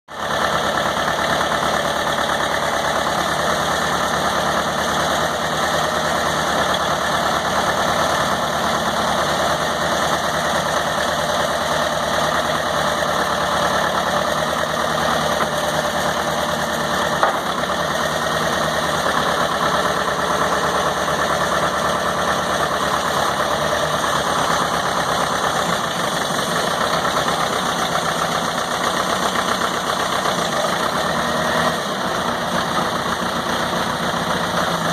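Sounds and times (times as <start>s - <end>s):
backhoe engine idling: 0.1s - 34.9s.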